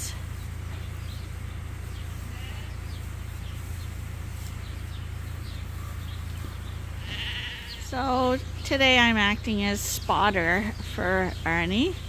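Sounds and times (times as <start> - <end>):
steady low hum: 0.0 - 12.0
faint sheep call: 2.2 - 3.0, 7.0 - 8.0.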